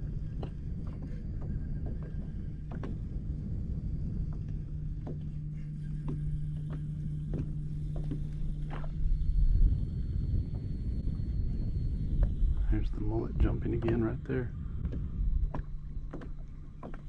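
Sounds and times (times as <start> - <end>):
boat motor humming: 0.0 - 17.0
light taps and knocks: 4.3 - 8.9, 13.4 - 17.0.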